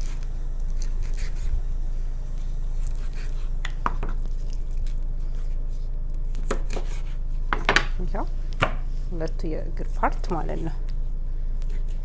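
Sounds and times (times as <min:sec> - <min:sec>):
steady low hum: 0:00.0 - 0:12.0
knife cutting raw chicken: 0:00.8 - 0:01.4, 0:06.3 - 0:07.2.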